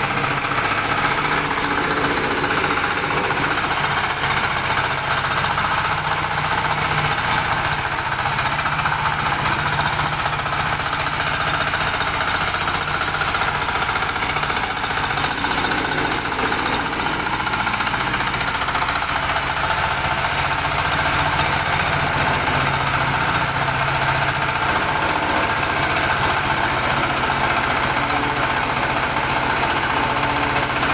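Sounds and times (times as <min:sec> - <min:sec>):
roller compactor engine running: 0:00.0 - 0:30.9.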